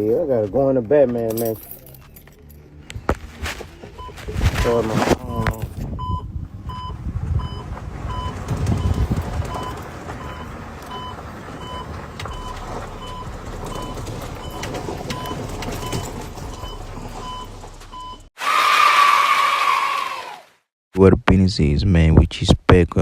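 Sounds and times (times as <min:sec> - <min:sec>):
low engine rumble: 0:00.0 - 0:18.3
backup alarm beeping: 0:04.0 - 0:04.4, 0:05.2 - 0:18.3.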